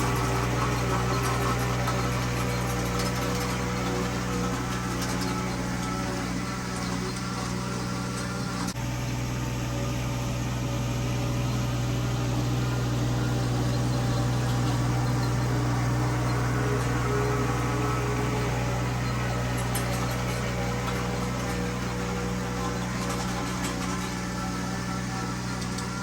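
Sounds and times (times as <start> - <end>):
vehicle engine running: 0.0 - 26.0.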